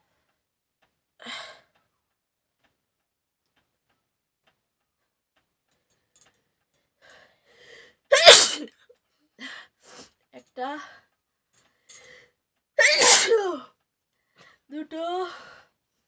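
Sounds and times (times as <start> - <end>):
loud sneeze: 8.1 - 8.7, 12.8 - 13.4.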